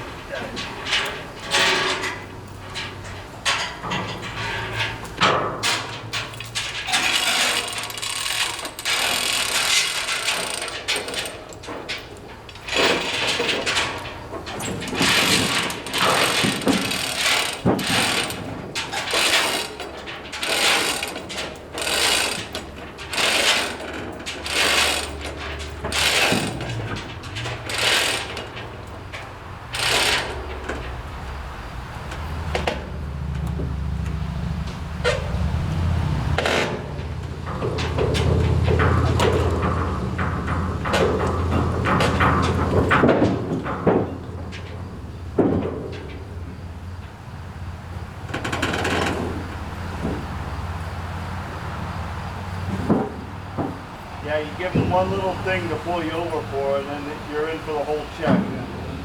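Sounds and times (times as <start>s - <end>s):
ratchet strap clicking: 6.8s - 11.6s, 14.8s - 28.6s, 29.7s - 30.8s.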